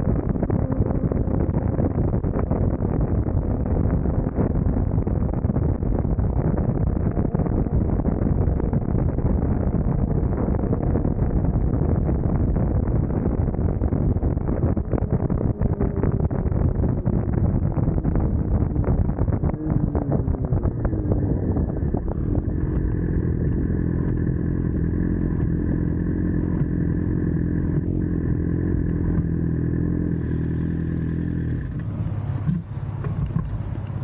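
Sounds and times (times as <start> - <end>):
motorcycle engine running: 0.0 - 34.0
wind buffeting microphone: 0.0 - 34.0
light engine clatter: 31.5 - 34.0.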